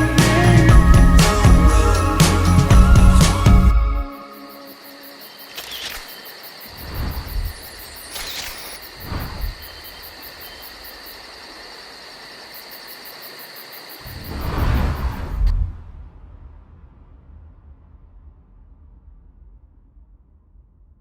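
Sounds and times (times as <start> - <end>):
insects chirping: 0.0 - 15.4
short whooshes: 14.1 - 17.0.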